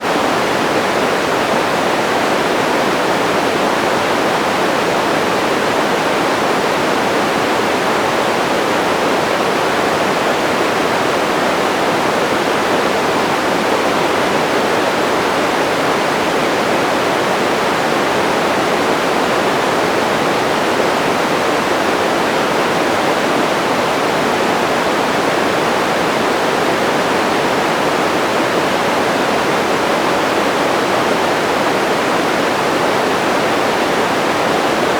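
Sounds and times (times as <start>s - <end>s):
steady white noise: 0.0s - 34.9s.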